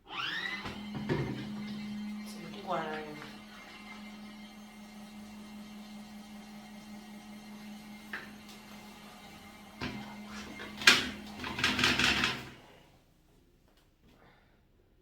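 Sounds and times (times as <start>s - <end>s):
low motor hum: 0.0s - 12.6s
clattering and rustling: 9.8s - 12.7s.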